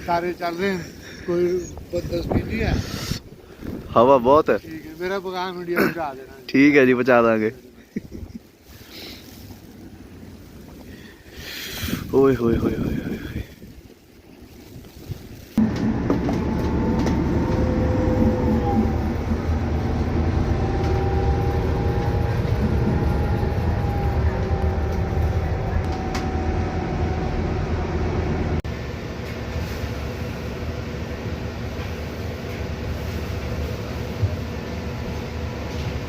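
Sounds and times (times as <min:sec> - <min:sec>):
faint whine: 0:15.6 - 0:31.3
bus engine drone: 0:15.6 - 0:36.0.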